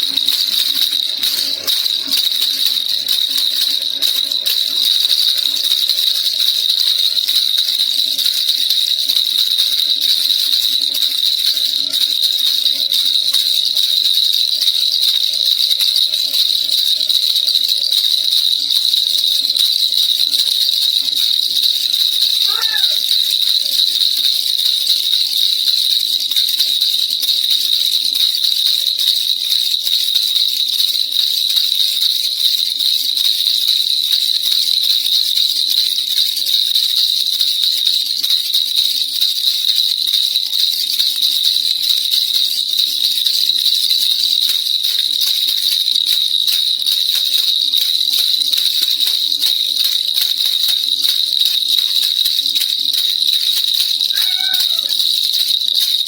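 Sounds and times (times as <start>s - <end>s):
baby rattle shaken: 0.0s - 56.0s.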